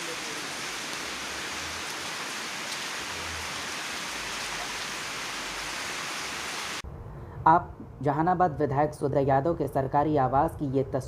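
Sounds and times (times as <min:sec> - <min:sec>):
steady rain falling: 0:00.0 - 0:06.8.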